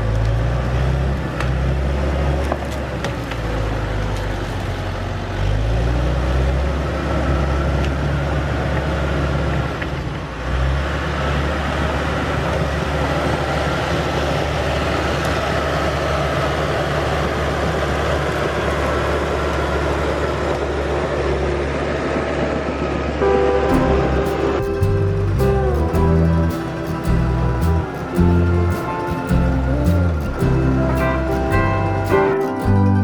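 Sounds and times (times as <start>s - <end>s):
bulldozer diesel engine rumble: 11.1s - 33.0s.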